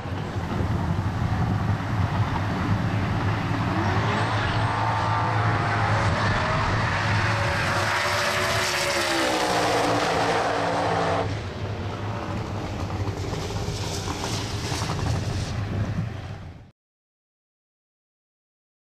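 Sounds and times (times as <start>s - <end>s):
low rough engine rumble: 0.0s - 7.2s.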